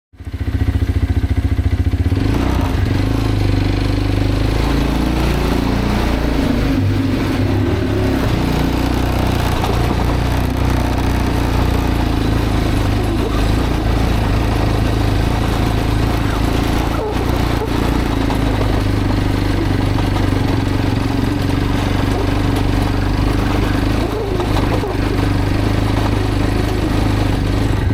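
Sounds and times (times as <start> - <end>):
motorcycle engine running: 0.2 - 27.9.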